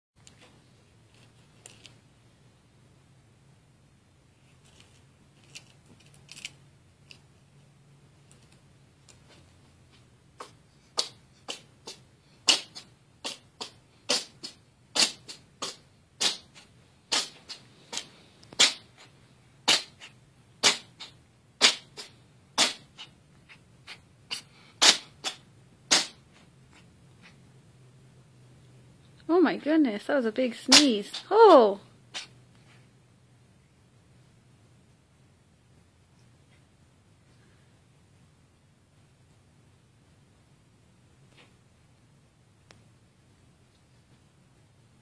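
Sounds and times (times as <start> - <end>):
cat sneezing: 10.4 - 18.0, 18.6 - 19.1, 19.7 - 26.2, 32.1 - 32.4.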